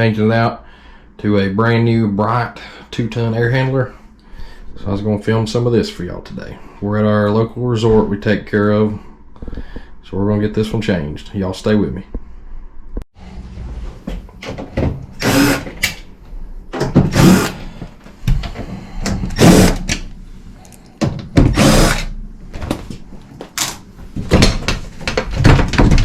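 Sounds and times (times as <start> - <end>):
power screwdriver bursts: 15.2 - 15.8, 17.1 - 17.6, 19.3 - 20.0, 21.5 - 22.2.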